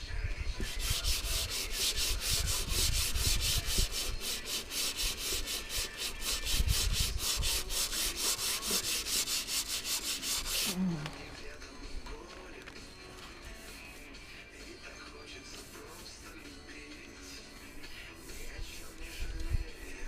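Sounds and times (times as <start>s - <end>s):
sandpaper rubbing on metal: 0.6s - 10.8s, 13.3s - 14.5s, 15.4s - 20.0s.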